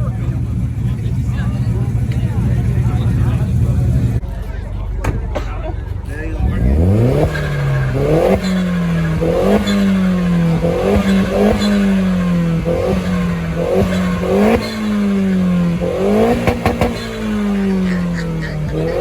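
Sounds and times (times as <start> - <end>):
car engine revving on limiter: 6.4 - 19.0
sharp exhaust cracks: 6.5 - 19.0.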